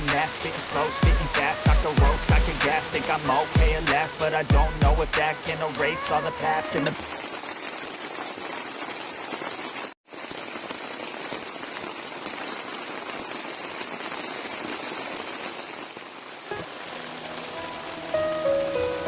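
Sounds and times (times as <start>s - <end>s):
heavy rain falling: 0.0s - 19.0s.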